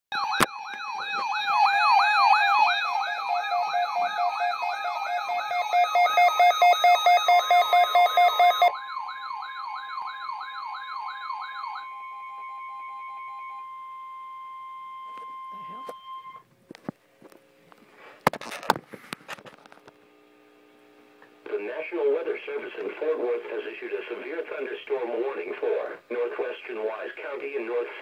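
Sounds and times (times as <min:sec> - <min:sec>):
weather radio alarm warble: 0:00.1 - 0:16.4
steady alarm tone: 0:00.1 - 0:16.5.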